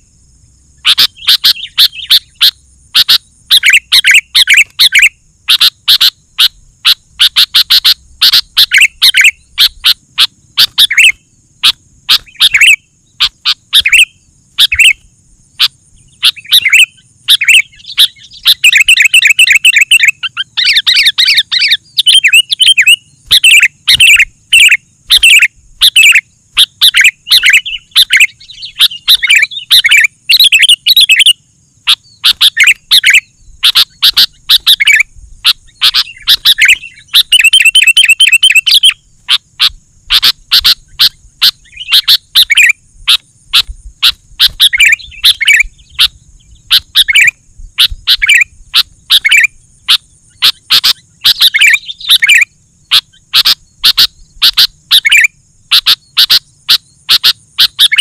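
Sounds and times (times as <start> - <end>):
bulbul singing: 0.0 - 58.0.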